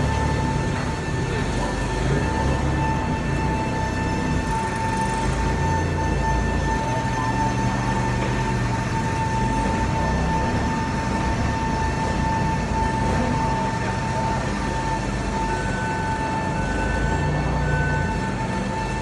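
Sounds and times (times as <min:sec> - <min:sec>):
machine running with high whine: 0:00.0 - 0:19.0.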